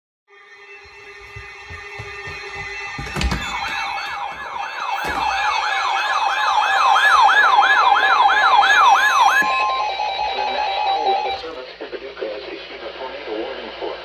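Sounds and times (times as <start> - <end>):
electronic siren yelping: 2.9 - 11.6.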